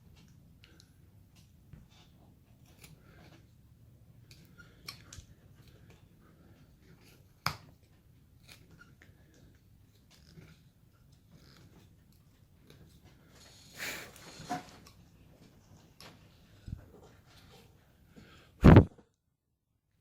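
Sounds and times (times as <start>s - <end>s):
knife carving wood: 1.7s - 3.4s, 8.3s - 9.0s, 13.8s - 14.3s.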